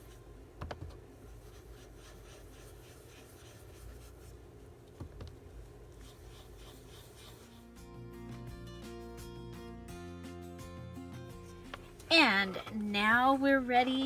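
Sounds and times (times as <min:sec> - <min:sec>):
rubbing strokes on paper cards: 0:01.2 - 0:04.4, 0:05.9 - 0:07.8.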